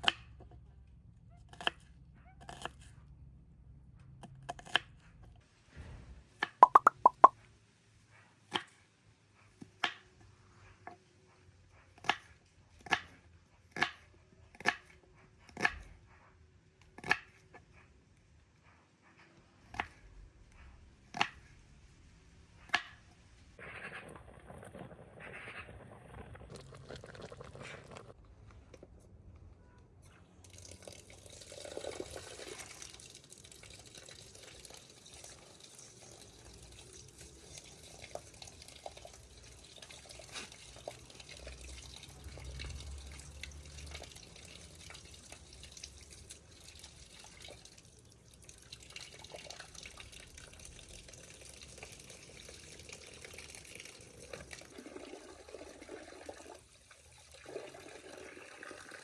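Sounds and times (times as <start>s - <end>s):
small water splashes: 6.6s - 7.3s
water trickling and dripping: 6.6s - 7.3s, 30.4s - 59.0s.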